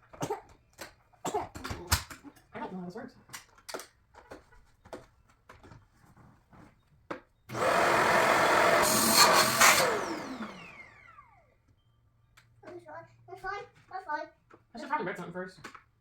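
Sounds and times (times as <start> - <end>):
plastic parts clicking and knocking: 0.1 - 2.5, 3.3 - 5.8
vacuum motor running: 7.5 - 11.4.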